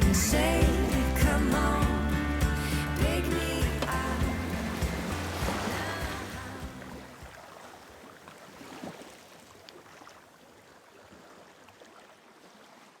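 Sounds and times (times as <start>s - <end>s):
background music: 0.0s - 7.0s
faint rushing noise: 3.6s - 7.2s.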